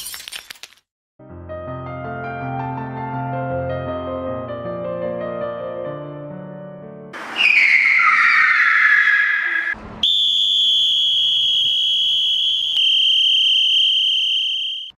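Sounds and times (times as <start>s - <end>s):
loud screech: 7.2s - 13.5s.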